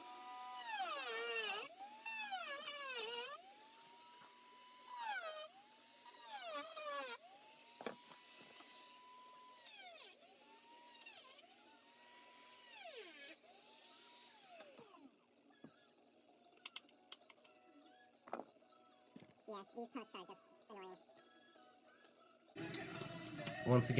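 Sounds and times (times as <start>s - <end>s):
rotary tool cutting plastic: 0.0s - 15.1s
rotary tool whining: 0.0s - 15.8s.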